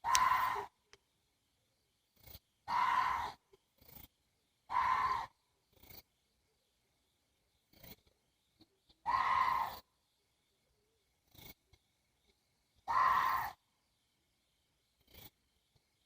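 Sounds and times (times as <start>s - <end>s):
deer hoarse screaming calls: 0.0s - 0.7s, 2.7s - 3.4s, 4.7s - 5.3s, 9.0s - 9.8s, 12.9s - 13.6s.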